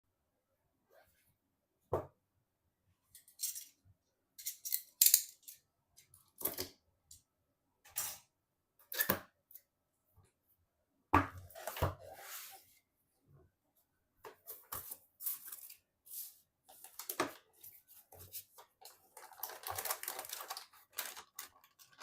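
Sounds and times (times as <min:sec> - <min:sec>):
clicks and rustling of packaging: 0:16.7 - 0:22.0.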